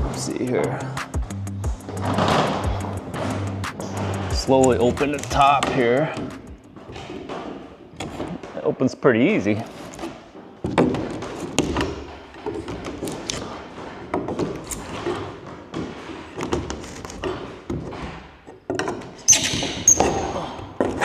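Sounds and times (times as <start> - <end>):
wood knocks and clunks: 1.8 - 8.8, 9.6 - 21.0
short high squeak: 19.3 - 20.0.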